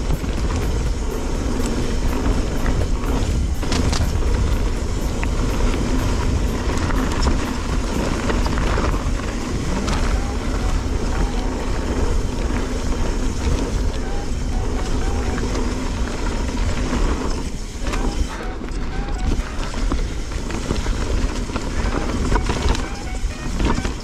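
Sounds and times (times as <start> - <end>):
small clicks and rattles: 0.0 - 24.0
tyres rumbling over dirt: 0.0 - 24.0
wind buffeting microphone: 0.0 - 24.0.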